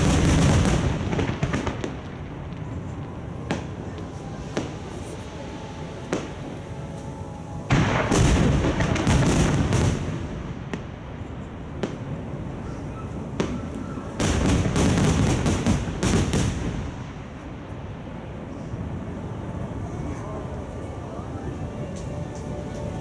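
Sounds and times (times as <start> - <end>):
single firework bangs: 0.0 - 2.2, 7.7 - 11.0, 13.4 - 17.1
fireworks booming: 0.0 - 18.0.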